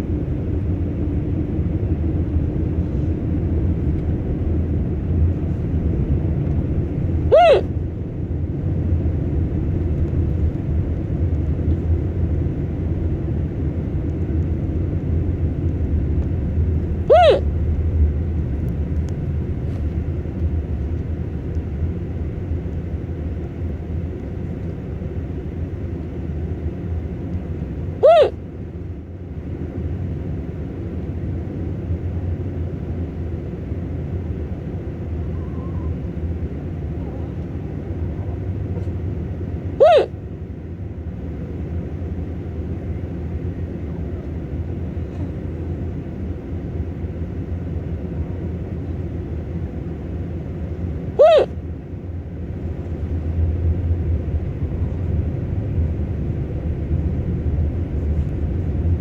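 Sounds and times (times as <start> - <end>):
low road rumble inside car: 0.0 - 59.0
person hiccuping: 7.3 - 7.7, 17.0 - 17.5, 28.0 - 28.4, 39.8 - 40.1, 51.2 - 51.5.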